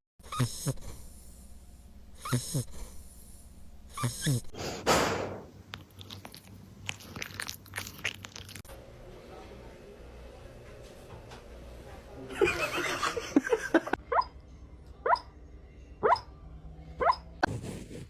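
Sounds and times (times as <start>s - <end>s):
dog snoring: 0.2s - 1.4s, 2.1s - 4.6s.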